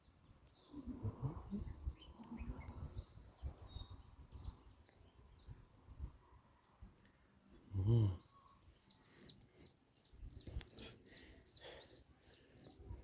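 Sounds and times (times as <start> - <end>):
small birds chirping: 0.0 - 13.0
wind rumble on microphone: 0.2 - 6.2.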